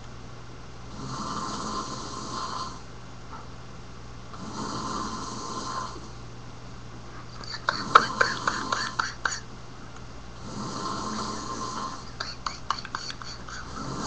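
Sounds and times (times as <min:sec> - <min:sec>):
person snoring: 0:00.9 - 0:02.9, 0:04.3 - 0:06.2, 0:07.4 - 0:09.4, 0:10.4 - 0:14.0.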